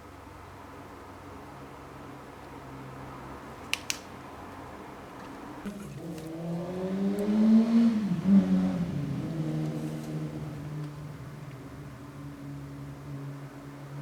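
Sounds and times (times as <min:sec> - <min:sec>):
sharp clicks: 0:03.6 - 0:04.1.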